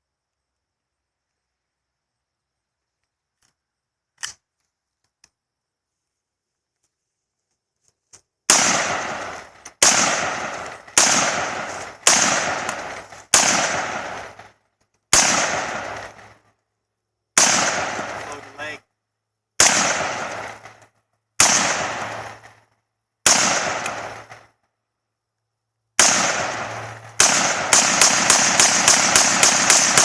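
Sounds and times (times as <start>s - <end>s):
echoing gunshots: 8.5s - 16.5s, 17.4s - 18.8s, 19.6s - 24.6s, 26.0s - 30.0s.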